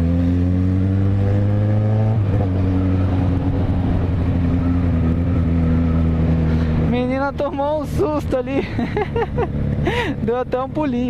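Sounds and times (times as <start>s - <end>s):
motorcycle engine accelerating: 0.0s - 10.7s.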